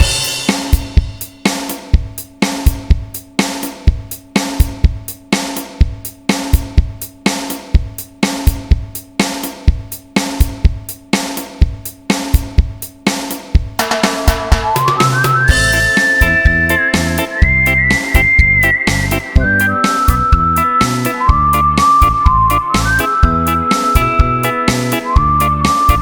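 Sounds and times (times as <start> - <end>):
drum kit beat: 0.0 - 26.0
held low note: 13.8 - 25.8.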